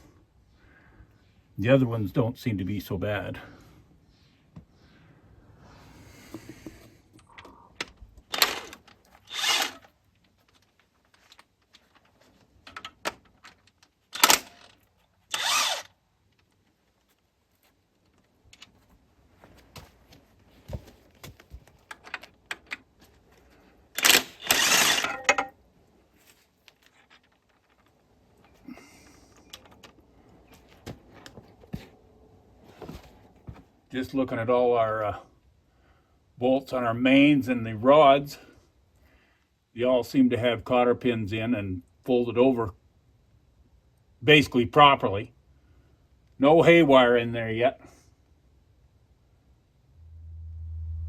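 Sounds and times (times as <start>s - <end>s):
power tool bursts: 9.3s - 9.8s, 15.3s - 15.9s, 24.0s - 25.3s.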